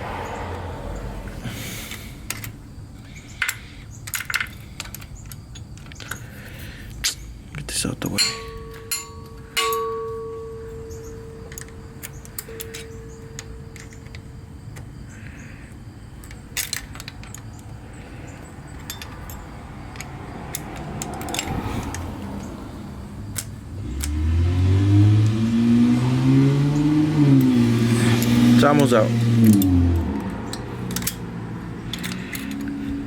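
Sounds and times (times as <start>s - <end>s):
wrench clicking on metal: 18.7s - 22.1s, 29.4s - 33.0s.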